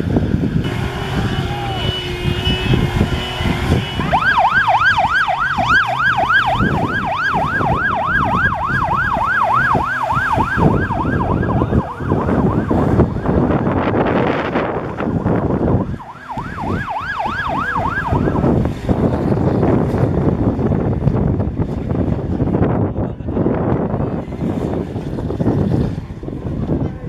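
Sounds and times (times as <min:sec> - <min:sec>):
loud vehicle noise: 0:00.0 - 0:27.0
yelp siren: 0:00.6 - 0:18.6.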